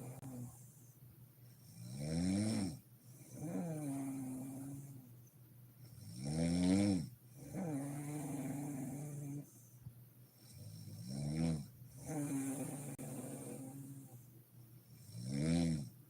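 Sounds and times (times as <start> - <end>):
woman snoring: 0.0 - 0.7, 1.7 - 5.0, 5.9 - 9.5, 10.4 - 14.2, 15.0 - 15.9.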